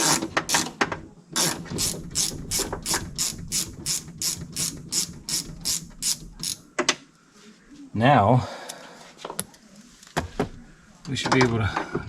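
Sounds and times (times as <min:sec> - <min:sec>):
ratchet wrench clicking: 0:01.4 - 0:06.6.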